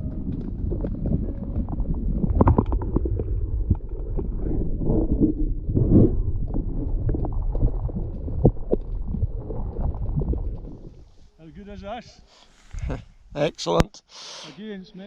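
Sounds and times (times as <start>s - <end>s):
low rumble: 0.0s - 11.2s
water sloshing against kayak hull: 0.1s - 11.4s.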